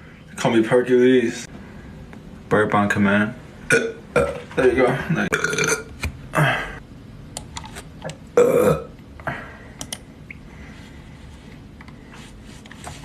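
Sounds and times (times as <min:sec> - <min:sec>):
man burping: 0:03.7 - 0:04.4, 0:05.1 - 0:06.8, 0:08.4 - 0:09.0.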